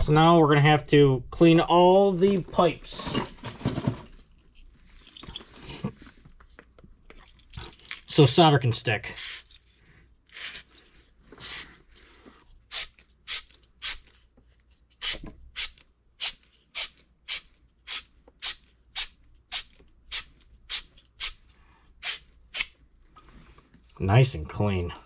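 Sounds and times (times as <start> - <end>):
abrasive scrubbing copper pipe: 22.0 - 22.8.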